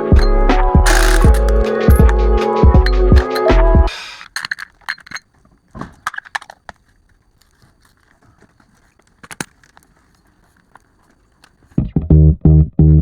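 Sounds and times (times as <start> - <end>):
metallic clicks of hand tools: 0.9 - 5.3, 5.9 - 11.7.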